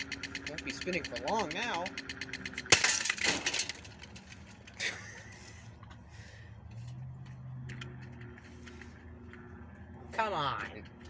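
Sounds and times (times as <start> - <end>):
fan smashing crash: 2.6 - 4.2.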